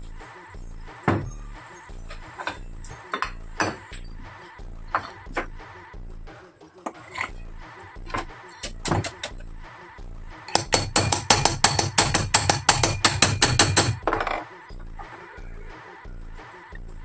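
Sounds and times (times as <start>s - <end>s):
rapid hammer taps: 10.5s - 14.0s.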